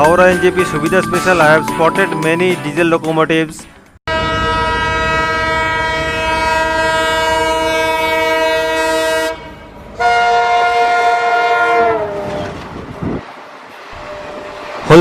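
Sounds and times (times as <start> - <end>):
low rail rumble: 3.7 - 15.0
locomotive air horn blasts: 4.1 - 12.5.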